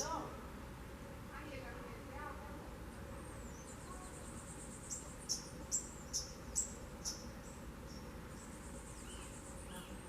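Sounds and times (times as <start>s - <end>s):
small bird chirping: 3.2s - 10.0s.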